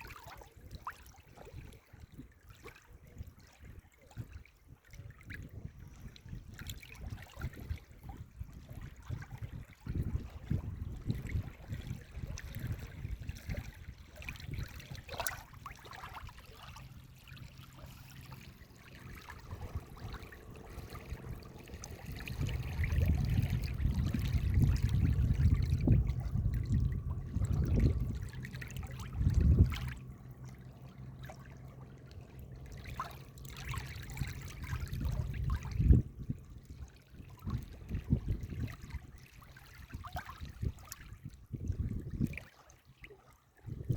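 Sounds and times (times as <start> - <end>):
stream trickling over rocks: 4.9 - 42.8
choppy low rumble: 5.3 - 39.2.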